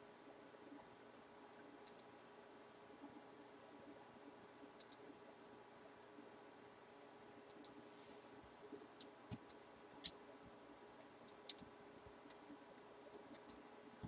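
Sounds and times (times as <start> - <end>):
faint clicks and taps: 8.5 - 14.0.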